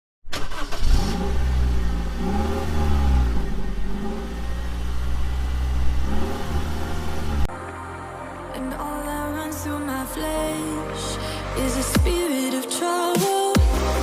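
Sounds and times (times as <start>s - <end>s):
car engine revving: 0.3s - 7.5s.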